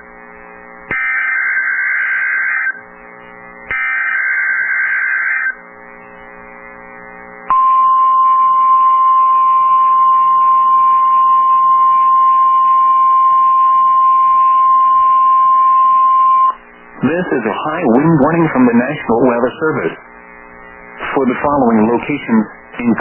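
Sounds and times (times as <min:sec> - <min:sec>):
steady warning alarm tone: 0:00.9 - 0:02.8, 0:03.7 - 0:05.6, 0:07.5 - 0:18.6.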